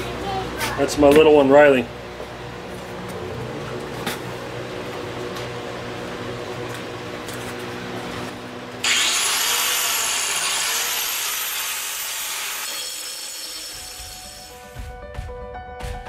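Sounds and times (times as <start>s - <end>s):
steady low hum: 0.0s - 8.9s
angle grinder grinding steel: 8.8s - 14.8s.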